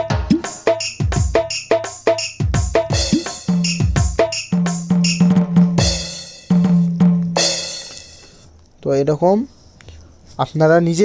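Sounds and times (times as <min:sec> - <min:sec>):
kick drum booms: 0:00.0 - 0:01.5, 0:02.4 - 0:07.6.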